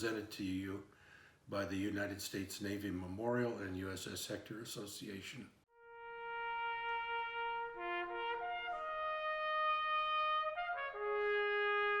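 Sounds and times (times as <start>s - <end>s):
slow brass music: 5.7s - 12.0s.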